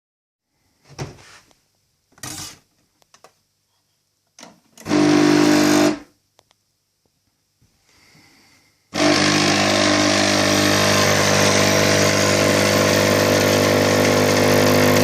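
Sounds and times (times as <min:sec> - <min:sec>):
espresso machine pump buzzing: 0:04.8 - 0:06.1, 0:09.0 - 0:15.0
short noisy bursts: 0:04.8 - 0:06.1, 0:09.0 - 0:15.0.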